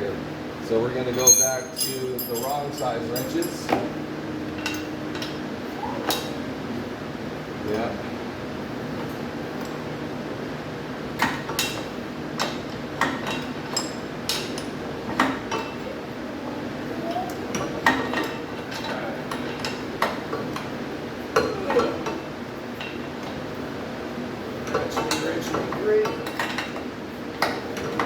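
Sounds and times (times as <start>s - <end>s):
wrench clinking on metal: 1.2s - 3.7s.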